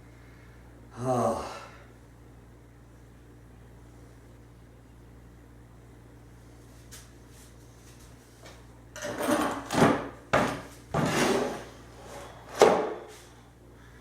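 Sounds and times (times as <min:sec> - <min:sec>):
parts scraping and dragging: 0:11.0 - 0:12.4.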